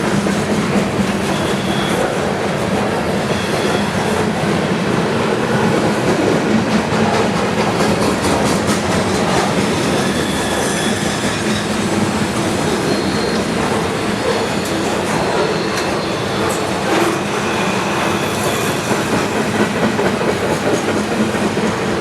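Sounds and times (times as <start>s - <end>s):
train wheels clacking: 0.0s - 22.0s
high wheel squeal: 1.1s - 4.4s, 8.8s - 21.5s.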